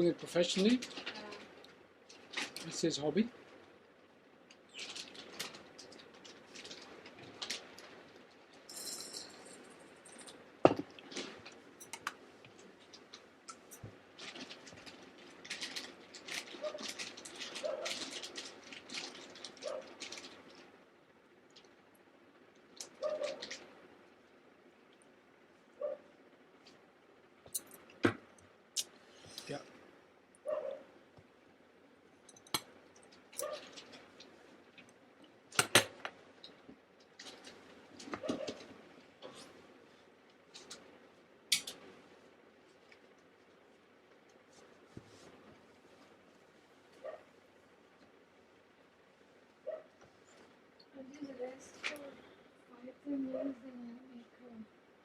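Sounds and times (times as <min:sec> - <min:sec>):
crackling: 0:00.0 - 0:20.8
rustling: 0:04.5 - 0:20.9, 0:32.7 - 0:52.4.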